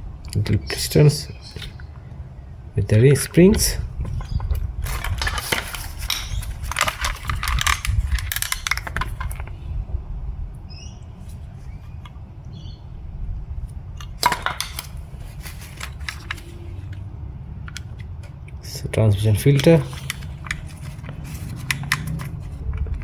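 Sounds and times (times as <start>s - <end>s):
small metal parts clinking: 3.5s - 9.5s, 14.0s - 16.6s.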